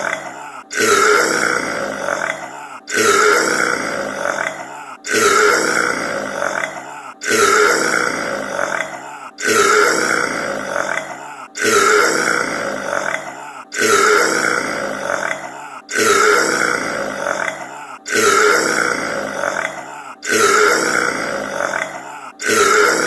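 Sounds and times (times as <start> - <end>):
man burping loudly: 0.0 - 23.0.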